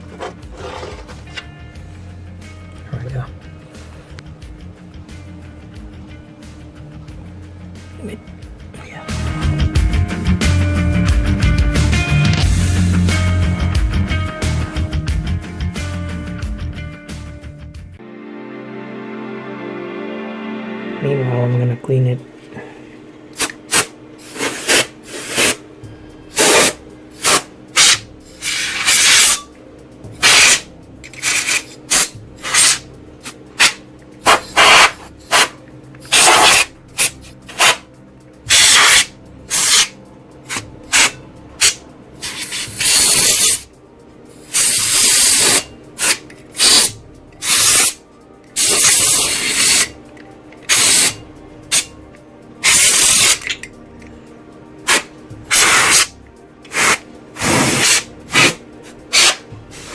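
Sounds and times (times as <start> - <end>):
compressed air duster hissing: 23.4 - 25.6, 26.3 - 29.5, 30.2 - 37.9, 38.5 - 43.7, 44.3 - 48.0, 48.6 - 50.0, 50.7 - 51.9, 52.6 - 53.4, 54.8 - 59.9.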